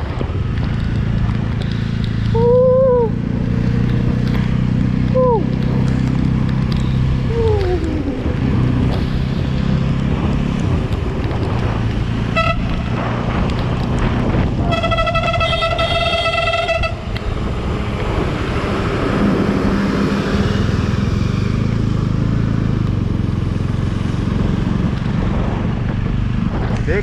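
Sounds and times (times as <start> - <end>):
heavy rain and wet road noise: 0.0 - 27.0
motorcycle engine running: 0.0 - 27.0
vehicle horn toots: 12.3 - 12.9, 14.6 - 17.1.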